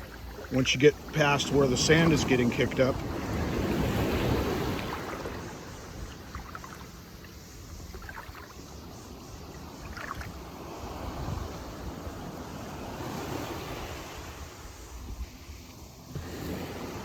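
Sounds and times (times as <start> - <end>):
small splashes: 0.0 - 8.8, 9.5 - 10.5
seawater sloshing: 0.0 - 17.0.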